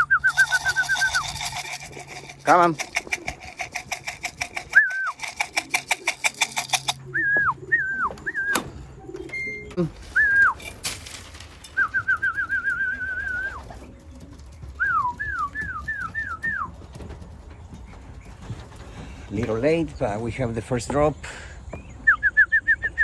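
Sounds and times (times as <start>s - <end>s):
person whistling: 0.0s - 1.2s, 4.7s - 5.2s, 7.1s - 8.6s, 10.1s - 10.6s, 11.8s - 13.6s.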